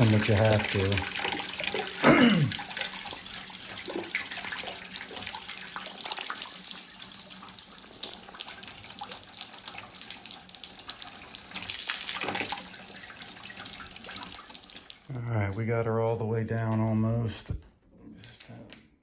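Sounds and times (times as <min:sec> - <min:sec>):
water splashing into bucket: 0:00.0 - 0:15.2.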